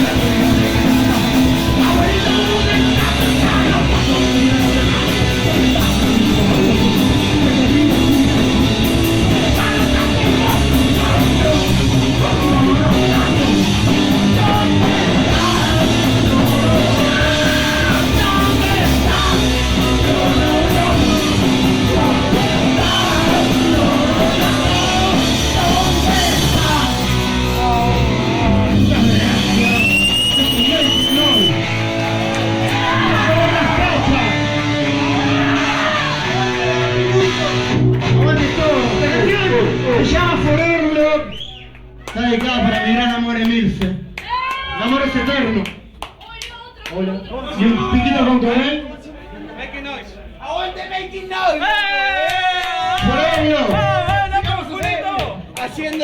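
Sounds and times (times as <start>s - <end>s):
person singing: 0.0s - 31.6s
punk rock band playing live: 0.0s - 43.2s.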